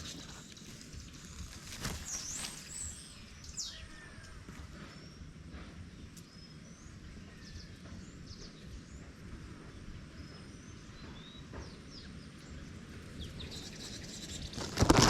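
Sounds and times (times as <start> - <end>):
birds chirping and whistling: 0.0 - 5.3.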